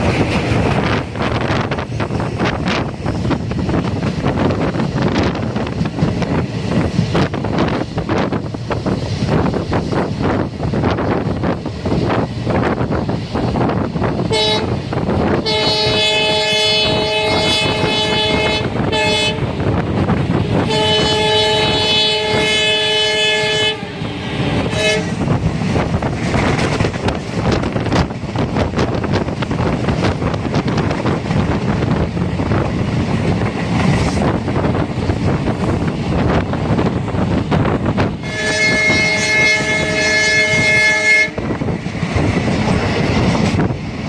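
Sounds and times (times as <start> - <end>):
train rumbling: 0.0 - 44.0
train horn blasts: 14.3 - 14.8, 15.4 - 19.7, 20.5 - 25.3, 38.2 - 41.6
wheels clicking over rail joints: 25.3 - 38.1.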